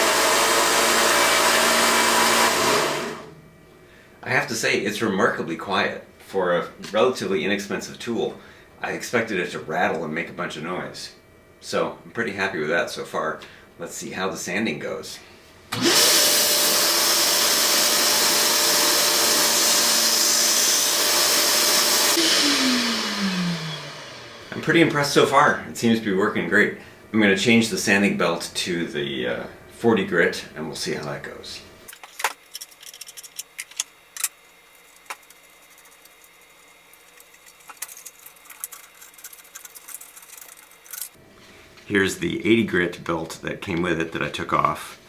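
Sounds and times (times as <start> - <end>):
belt sander and vacuum rushing: 0.0 - 3.3, 15.8 - 24.4
faint steady hum: 3.2 - 15.7
light metallic rattles: 31.9 - 41.2.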